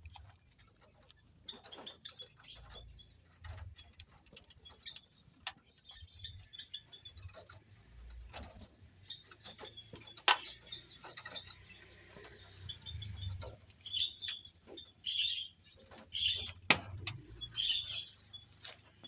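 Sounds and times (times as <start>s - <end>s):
birds chirping high calls: 9.0s - 18.9s.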